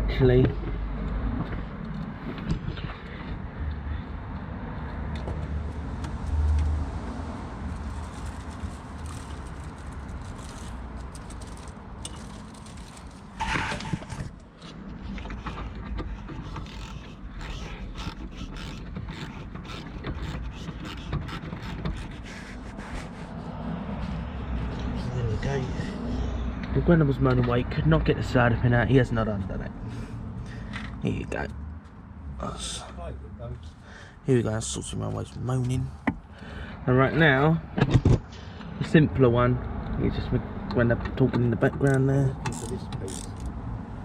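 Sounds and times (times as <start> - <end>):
metal clinks and scrapes: 7.7 - 22.3
socket ratchet clicking: 15.3 - 22.2, 41.9 - 43.6.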